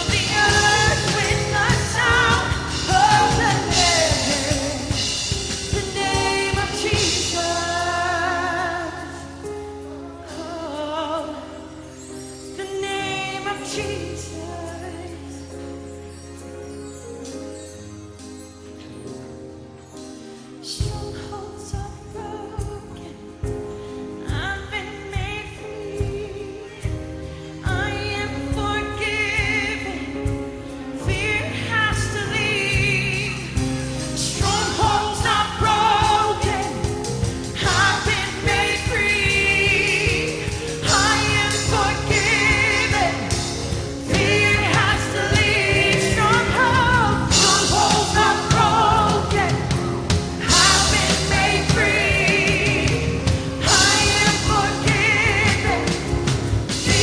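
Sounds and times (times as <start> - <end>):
singers singing: 0.0 - 9.3, 31.1 - 57.0
gospel band playing: 0.0 - 57.0.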